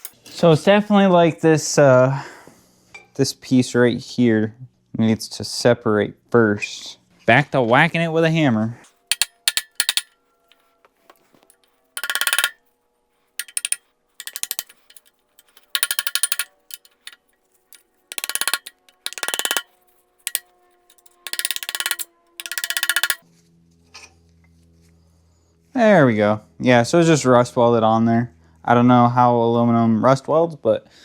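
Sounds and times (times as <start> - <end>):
metal ringing: 9.1 - 10.1, 11.5 - 12.6, 13.4 - 23.2.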